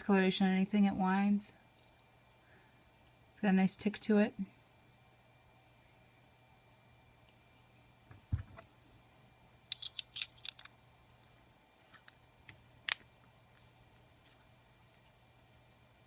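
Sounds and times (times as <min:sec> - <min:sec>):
small sharp metallic clicks: 0:01.8 - 0:02.1.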